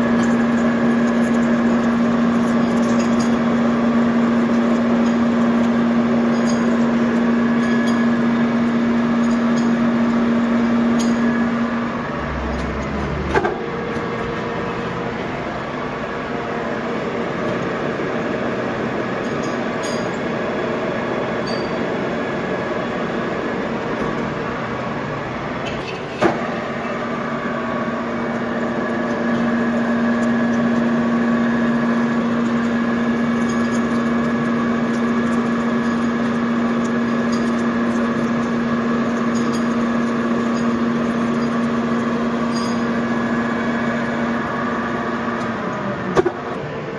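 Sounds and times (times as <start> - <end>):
metal lathe running: 0.0 - 46.9
low tone: 10.7 - 15.3.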